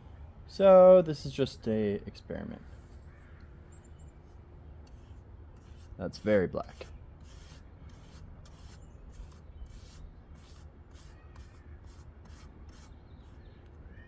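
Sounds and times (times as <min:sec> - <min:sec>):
rubbing strokes on wood: 0:04.8 - 0:13.4.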